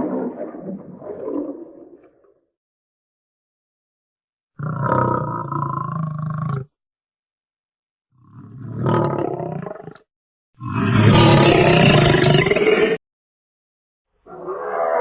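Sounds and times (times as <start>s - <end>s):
dragon roar: 14.3s - 15.0s.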